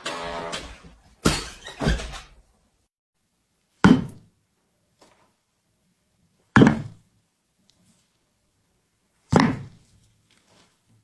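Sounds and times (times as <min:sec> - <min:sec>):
sharp knocks: 0:00.0 - 0:02.2.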